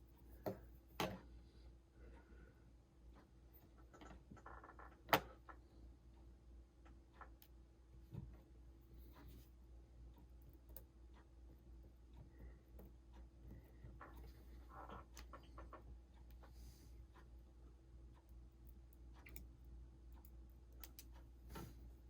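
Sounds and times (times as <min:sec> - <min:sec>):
low steady hum: 0:00.0 - 0:22.0
tweezers clicking on metal: 0:20.2 - 0:21.2.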